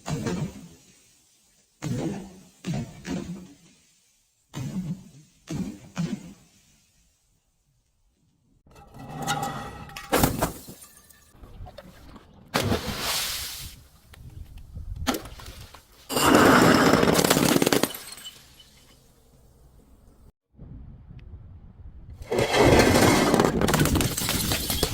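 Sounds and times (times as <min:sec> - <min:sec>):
glass shattering and crunching: 0:09.8 - 0:11.4, 0:16.1 - 0:19.1, 0:23.5 - 0:24.9.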